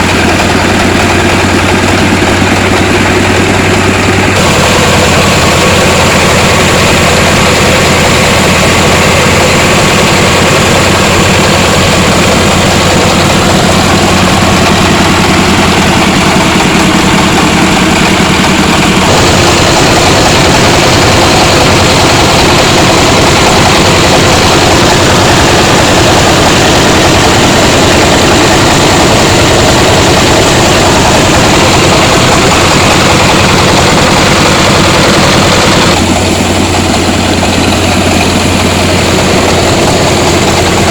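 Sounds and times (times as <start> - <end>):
engine and machinery running: 0.0 - 40.9.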